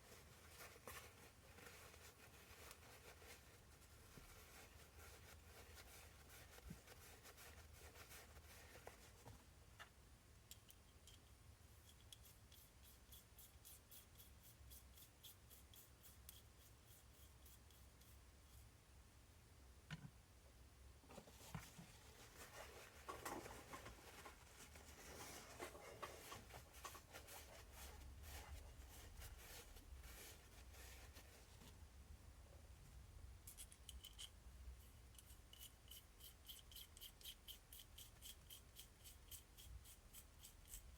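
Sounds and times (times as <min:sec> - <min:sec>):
small parts clicking and rubbing: 0:33.4 - 0:40.9.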